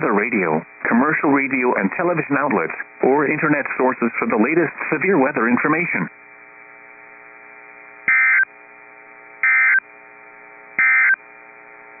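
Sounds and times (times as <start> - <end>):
faint steady hum: 0.0 - 12.0
digital data tone bursts: 8.1 - 8.5, 9.4 - 9.8, 10.8 - 11.2.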